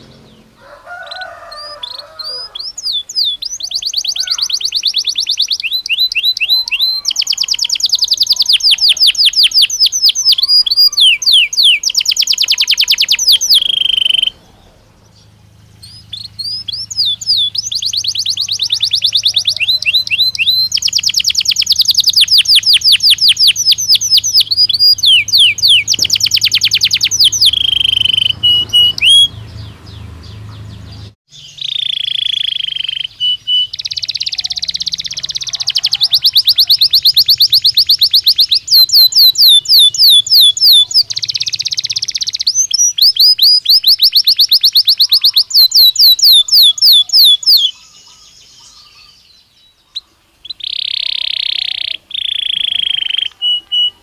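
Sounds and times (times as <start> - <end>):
canary singing trills: 0.0 - 54.0
faint low hum: 13.1 - 31.0.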